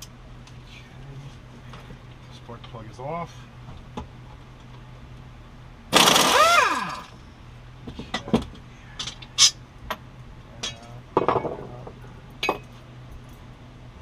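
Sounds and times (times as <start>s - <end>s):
power tool spinning down: 6.0s - 7.2s.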